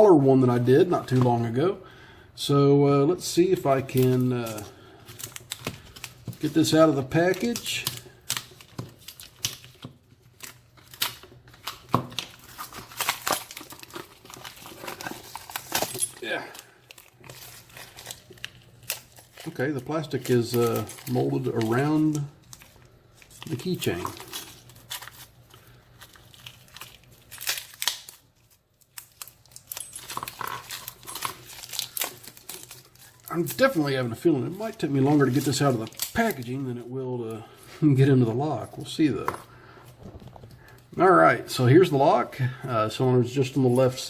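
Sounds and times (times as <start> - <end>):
plastic packaging crackling: 3.4 - 37.6.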